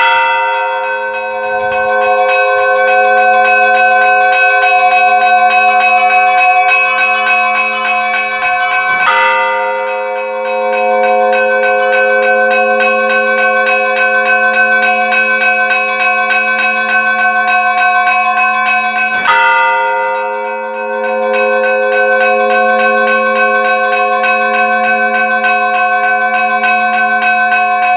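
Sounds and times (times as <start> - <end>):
heavy bell stroke: 0.0 - 4.2, 6.0 - 13.2
small church bells ringing: 0.0 - 27.9.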